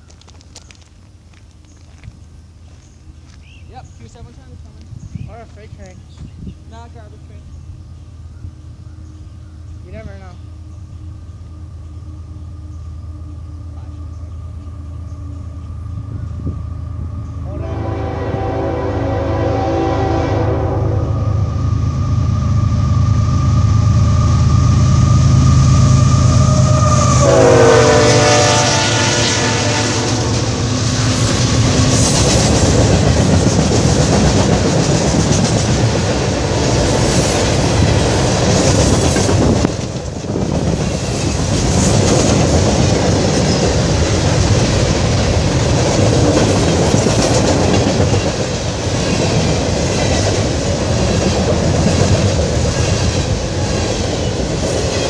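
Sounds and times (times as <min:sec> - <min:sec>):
train horn: 0:17.4 - 0:22.4, 0:24.3 - 0:30.7
train wheels clattering over rails: 0:30.2 - 0:55.0.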